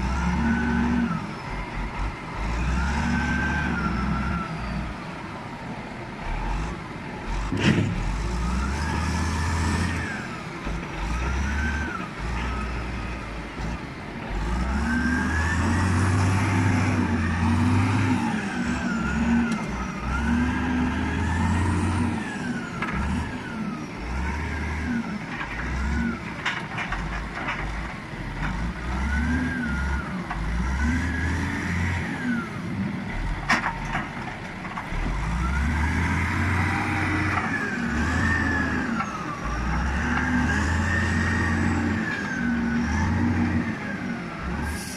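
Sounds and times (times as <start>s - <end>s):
heavy diesel engine revving: 0.0s - 5.0s, 6.2s - 34.1s, 34.7s - 44.9s.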